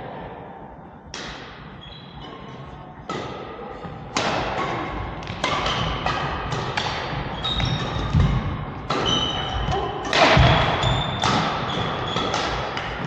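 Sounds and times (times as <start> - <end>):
rackets hitting shuttlecock: 1.1 - 1.7, 3.0 - 13.0.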